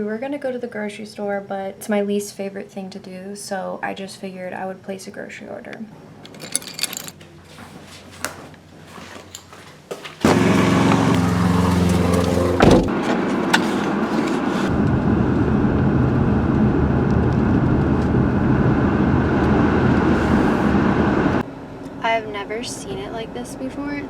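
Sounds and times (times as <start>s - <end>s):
car engine starting and running: 10.2s - 21.4s
sharp thump: 12.2s - 13.0s.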